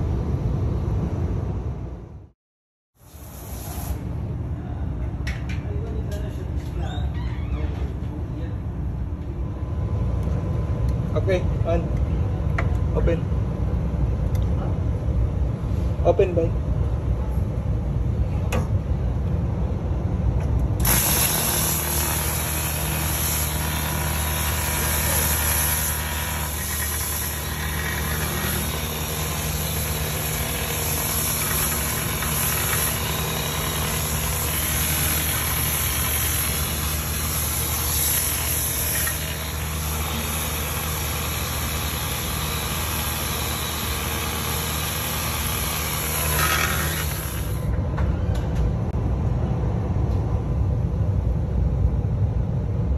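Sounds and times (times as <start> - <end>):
electric motor hum: 20.8 - 47.7.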